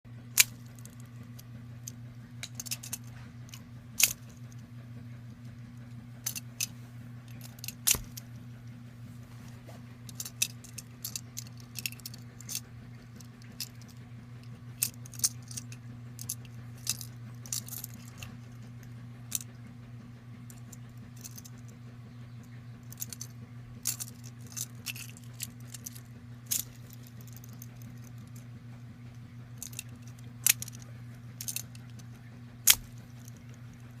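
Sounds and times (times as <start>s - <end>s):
steady low hum: 0.1s - 34.0s
plastic pieces clicking and clattering: 0.4s - 4.5s, 6.2s - 6.7s, 7.3s - 8.2s, 10.1s - 18.5s, 20.5s - 21.7s, 22.8s - 28.4s, 29.6s - 33.8s.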